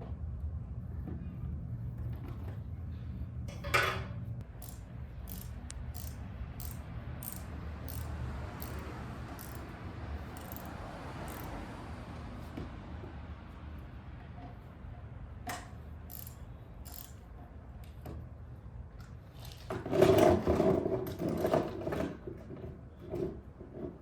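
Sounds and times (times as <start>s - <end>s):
socket ratchet clicking: 4.4s - 11.6s, 16.1s - 17.2s.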